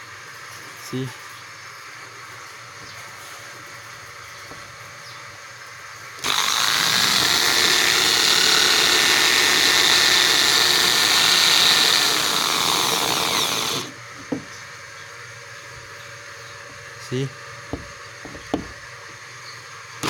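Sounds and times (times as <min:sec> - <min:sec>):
drill cutting into plastic: 0:06.2 - 0:14.0.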